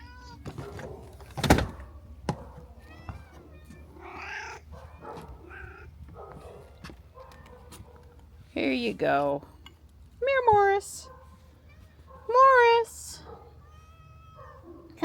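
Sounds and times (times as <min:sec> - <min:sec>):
cat meowing: 0:02.7 - 0:06.0, 0:13.5 - 0:14.6.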